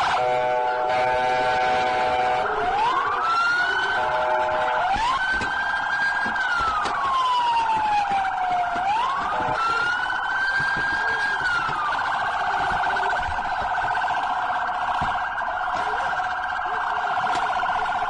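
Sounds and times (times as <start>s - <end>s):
police siren wailing: 0.0s - 18.0s.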